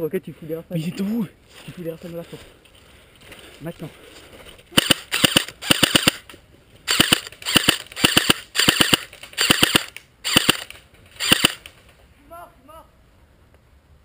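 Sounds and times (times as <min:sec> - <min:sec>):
airsoft rifle firing bursts: 0:04.7 - 0:06.2, 0:06.9 - 0:11.7.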